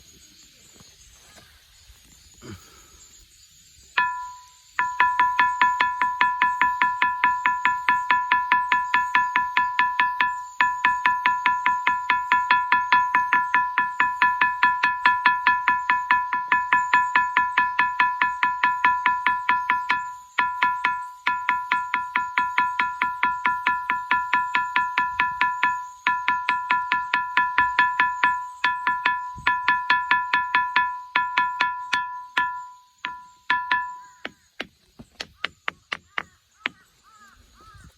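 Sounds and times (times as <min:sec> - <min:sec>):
ringing rocks struck: 0:04.0 - 0:37.8.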